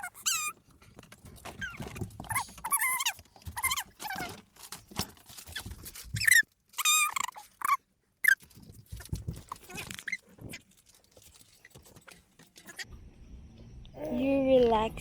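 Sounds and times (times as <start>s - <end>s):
dog whining: 0.0s - 0.6s, 6.2s - 8.4s.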